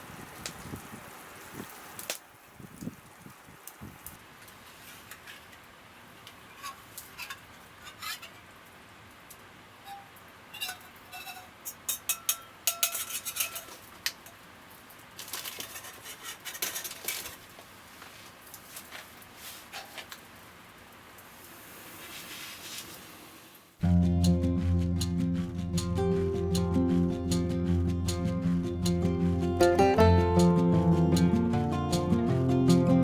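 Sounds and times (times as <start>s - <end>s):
metal utensils clinking on cookware: 6.4s - 8.5s, 9.8s - 14.4s.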